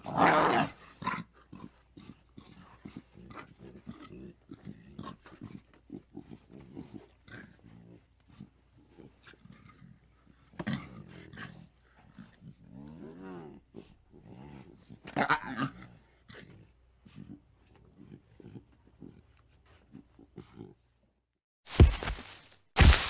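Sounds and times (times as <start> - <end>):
creature growls and grunts: 12.6 - 16.7.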